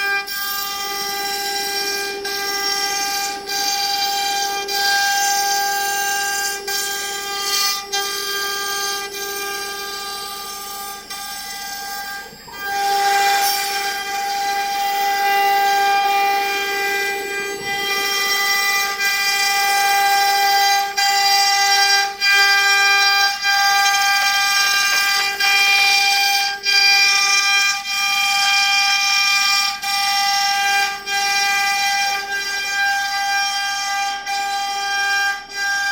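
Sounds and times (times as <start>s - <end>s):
router spindle high-pitched whine: 0.0s - 35.9s.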